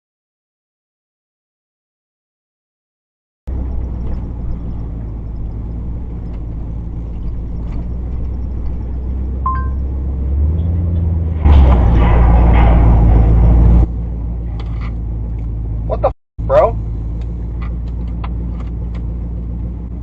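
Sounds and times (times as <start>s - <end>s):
car engine and road noise: 3.5s - 20.0s
short beep: 9.5s - 9.9s.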